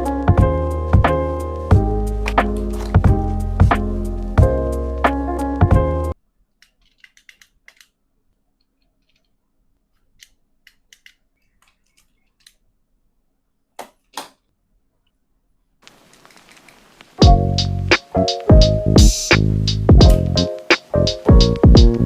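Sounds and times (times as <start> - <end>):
small clicks and taps: 6.6 - 8.0, 8.6 - 12.6.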